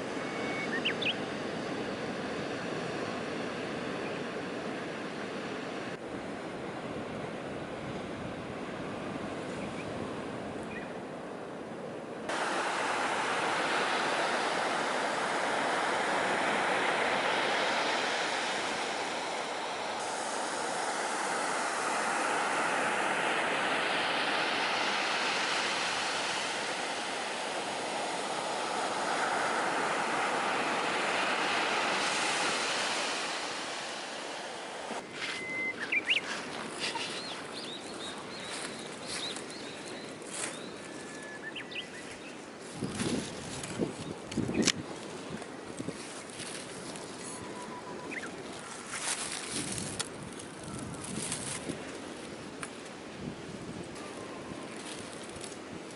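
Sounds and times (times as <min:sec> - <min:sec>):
sea surf washing on shore: 0:12.1 - 0:55.9.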